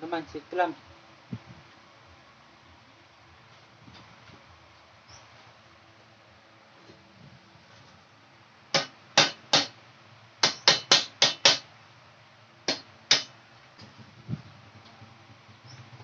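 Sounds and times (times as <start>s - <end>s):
hammer striking metal: 8.7s - 9.8s, 10.4s - 11.6s, 12.7s - 13.3s.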